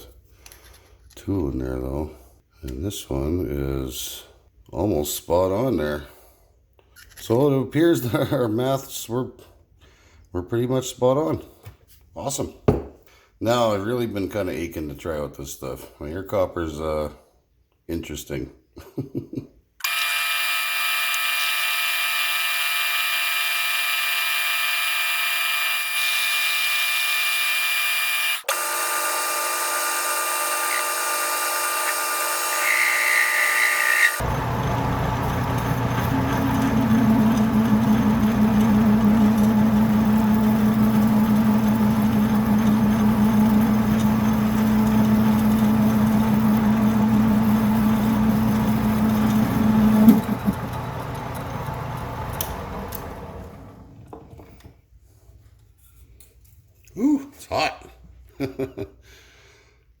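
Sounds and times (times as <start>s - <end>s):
machine tool cutting metal: 22.3s - 53.9s
motor whine: 34.0s - 54.2s.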